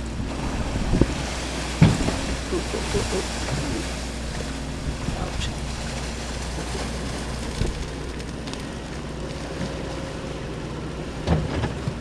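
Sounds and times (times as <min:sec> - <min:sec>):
wind gusting on microphone: 0:00.0 - 0:05.9
floodwater rushing: 0:00.0 - 0:11.2
low engine hum: 0:00.0 - 0:12.0.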